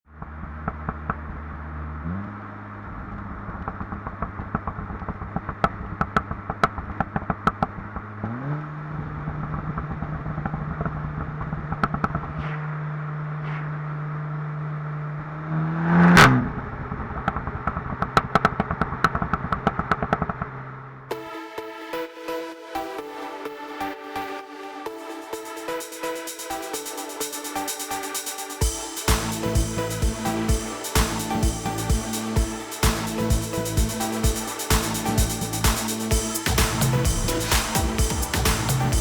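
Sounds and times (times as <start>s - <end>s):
car engine idling and revving: 0.1s - 21.1s, 28.6s - 39.0s
exhaust crackles: 0.1s - 21.1s.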